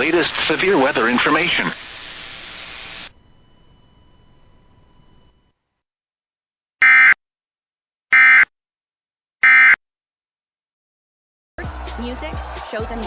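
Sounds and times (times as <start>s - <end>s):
digital data tone bursts: 0.0s - 3.1s.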